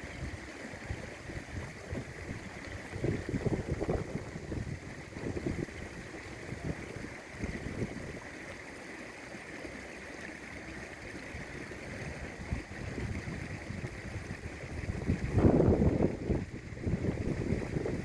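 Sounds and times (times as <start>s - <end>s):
wind buffeting microphone: 0.2s - 8.3s, 11.8s - 18.0s.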